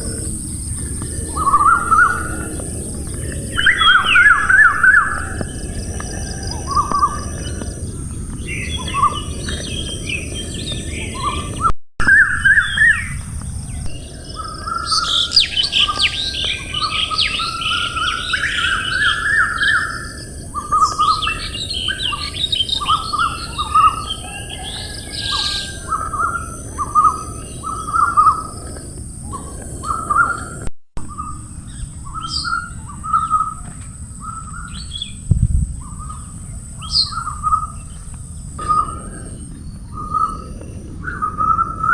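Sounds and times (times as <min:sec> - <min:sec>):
steady high-pitched tone: 0:00.0 - 0:07.7
songbirds singing and chirping: 0:00.0 - 0:41.9.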